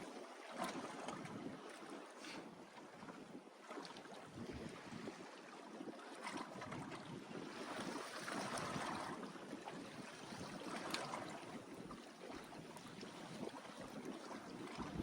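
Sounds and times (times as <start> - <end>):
water sloshing against hull: 0.0 - 15.0.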